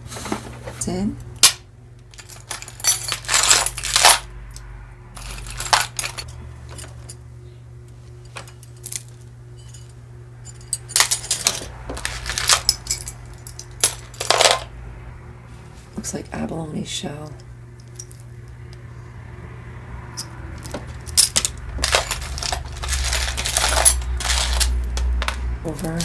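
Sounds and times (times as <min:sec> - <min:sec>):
jewelry clinking and rattling: 0:02.1 - 0:04.3, 0:05.2 - 0:07.2, 0:08.2 - 0:14.7, 0:20.1 - 0:26.0.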